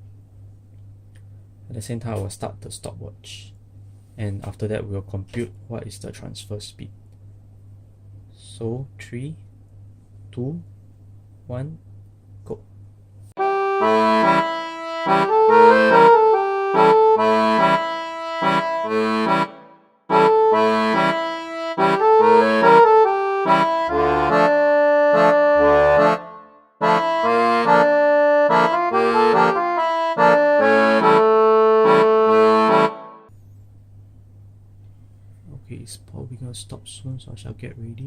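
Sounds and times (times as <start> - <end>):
instrumental music with bass line: 13.4 - 33.3.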